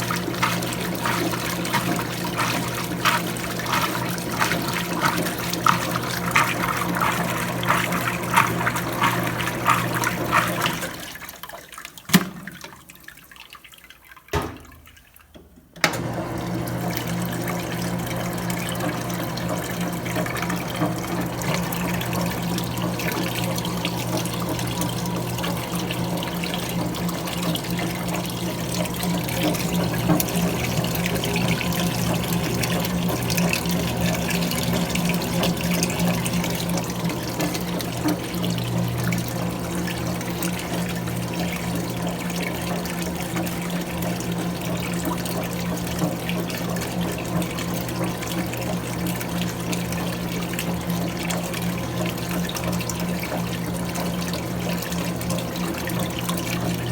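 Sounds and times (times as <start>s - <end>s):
motor hum: 0.0s - 11.0s, 15.9s - 46.2s
washing machine water rushing: 0.0s - 56.9s.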